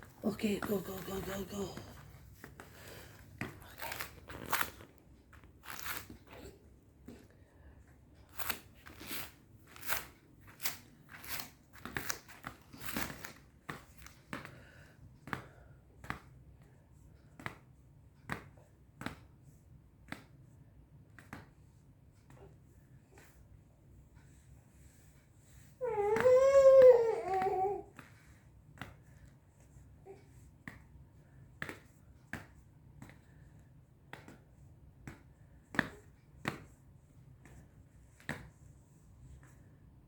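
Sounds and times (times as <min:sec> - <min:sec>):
crinkly rustling: 0:00.0 - 0:06.5.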